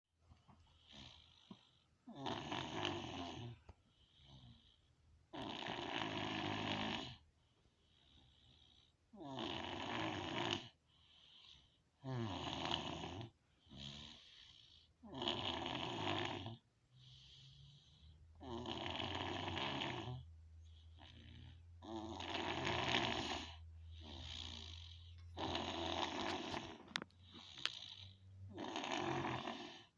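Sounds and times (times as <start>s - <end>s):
quiet breaths: 0.2s - 29.9s
man snoring: 2.1s - 3.6s, 5.3s - 7.2s, 8.6s - 10.8s, 11.4s - 20.3s, 21.0s - 29.9s.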